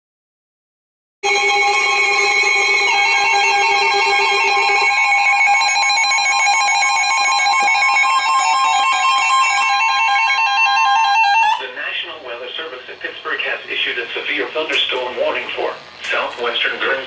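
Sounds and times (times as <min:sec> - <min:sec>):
rapidly pulsing electronic beeps: 0:01.2 - 0:11.7
steady warning tone: 0:01.2 - 0:17.0.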